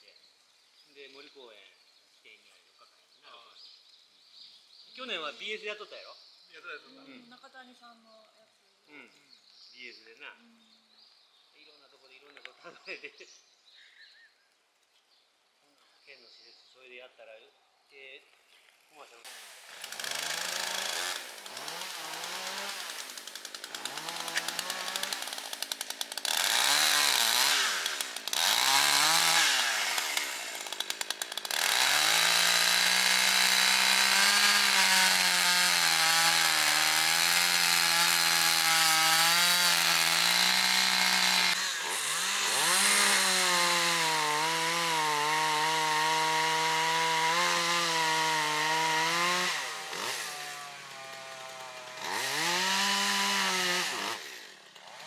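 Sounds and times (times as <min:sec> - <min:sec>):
chainsaw cutting wood: 0:18.7 - 0:55.0
chainsaw revving: 0:19.3 - 0:55.0.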